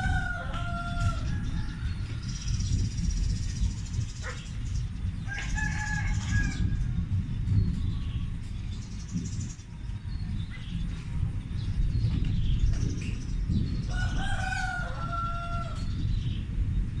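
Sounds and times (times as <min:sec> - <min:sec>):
rooster crowing: 0:00.0 - 0:02.1, 0:05.3 - 0:06.6, 0:13.9 - 0:15.9.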